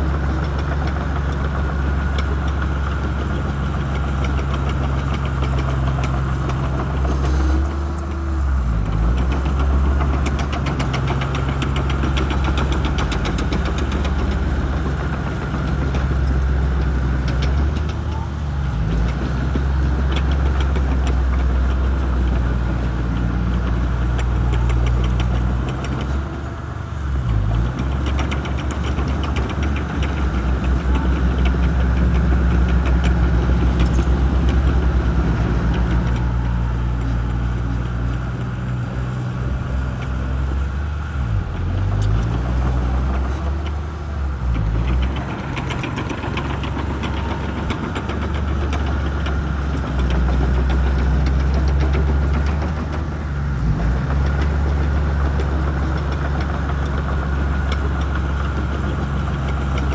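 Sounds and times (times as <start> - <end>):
bulldozer diesel engine droning: 0.0 - 59.9
rapid clattering: 42.4 - 59.9.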